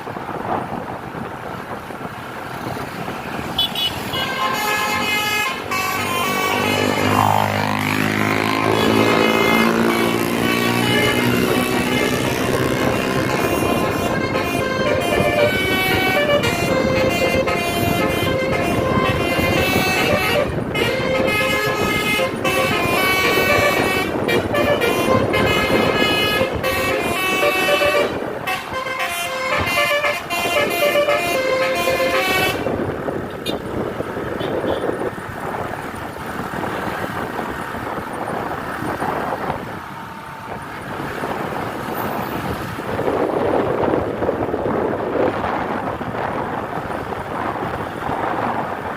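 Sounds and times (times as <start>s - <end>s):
bus rumble and road noise: 0.0s - 48.9s
multi-tone bus air horn melody: 3.6s - 33.7s, 34.4s - 34.9s.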